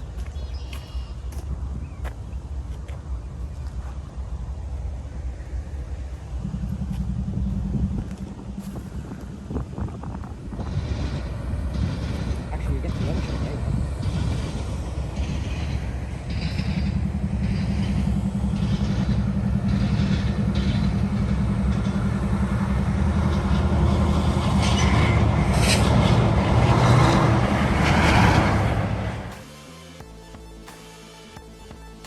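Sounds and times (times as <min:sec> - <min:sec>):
diesel locomotive engine: 0:00.0 - 0:32.0
train wheels clattering and squealing: 0:10.5 - 0:29.4.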